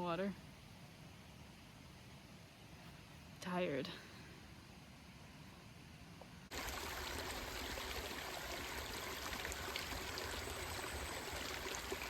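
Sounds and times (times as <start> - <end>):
mountain stream rushing: 6.5 - 12.0.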